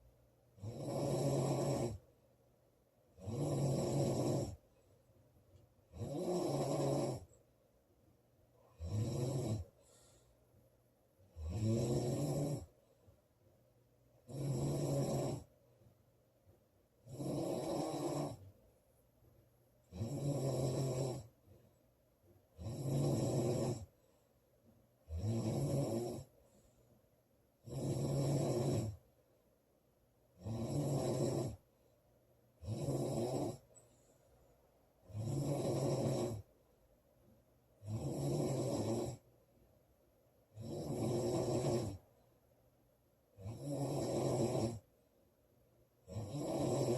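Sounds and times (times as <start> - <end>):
woman snoring loudly: 0.6 - 2.0, 3.2 - 4.6, 5.9 - 7.3, 8.8 - 9.7, 11.3 - 12.7, 14.3 - 15.5, 17.0 - 18.4, 19.9 - 21.3, 22.6 - 23.9, 25.1 - 26.3, 27.6 - 29.0, 30.4 - 31.6, 32.6 - 33.6, 35.1 - 36.5, 37.8 - 39.2, 40.6 - 42.0, 43.4 - 44.8, 46.1 - 46.9.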